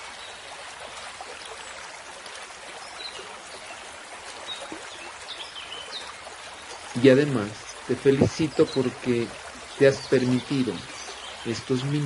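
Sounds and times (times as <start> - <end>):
stream running water: 0.0 - 12.0
faint bird chirp: 2.8 - 12.0.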